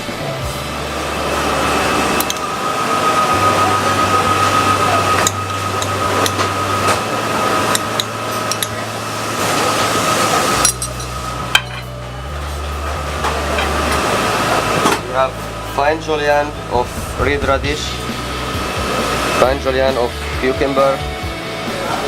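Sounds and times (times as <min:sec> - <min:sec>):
kitchen ventilation hum: 0:00.0 - 0:22.0
utensils clinking on plates: 0:05.0 - 0:15.0.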